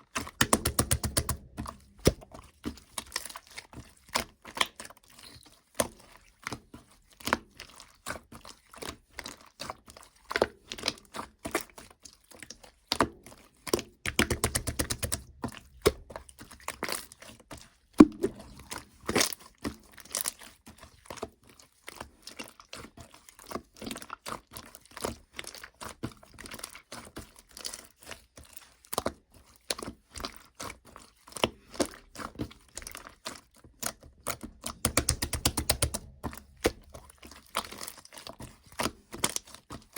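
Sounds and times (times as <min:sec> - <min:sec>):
slime squishing with sticky clicks: 0:00.0 - 0:39.9
crackling popping of slime: 0:00.3 - 0:02.3, 0:34.3 - 0:37.0.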